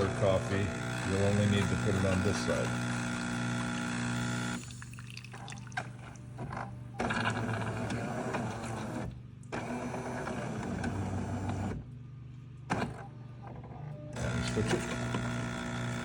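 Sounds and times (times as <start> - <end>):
espresso machine pump humming: 0.0 - 11.7, 14.2 - 16.0
water running into cup: 3.6 - 6.4.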